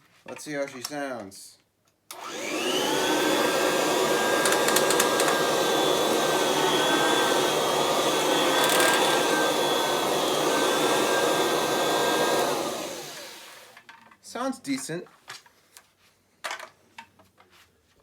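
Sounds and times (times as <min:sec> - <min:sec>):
vacuum cleaner motor whining: 0:02.1 - 0:13.8.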